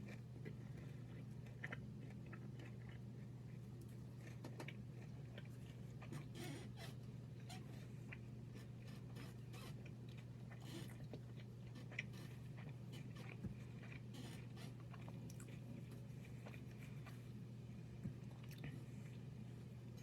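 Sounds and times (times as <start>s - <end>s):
person chewing: 0.0s - 6.1s, 10.2s - 17.2s.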